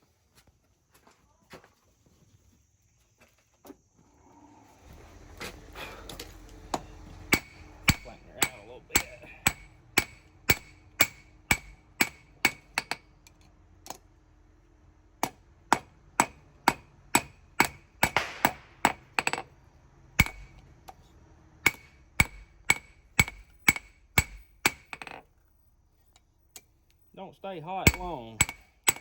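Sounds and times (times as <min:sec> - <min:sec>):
hammer striking steel on anvil: 0:06.7 - 0:13.1, 0:15.2 - 0:19.5, 0:20.2 - 0:20.6, 0:21.6 - 0:25.1, 0:27.8 - 0:29.0.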